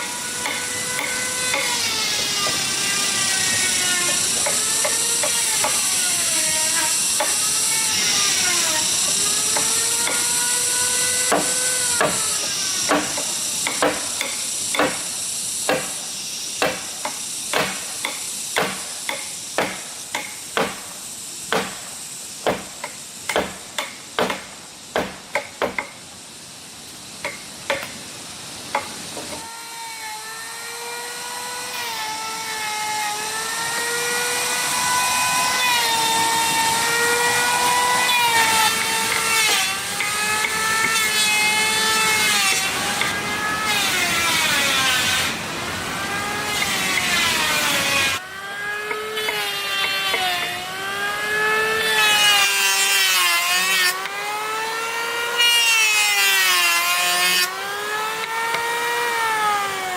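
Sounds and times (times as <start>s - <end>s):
power tool motor whining: 0.0s - 15.2s, 29.3s - 59.9s
hammer blows on wood: 15.7s - 16.0s, 16.6s - 26.0s.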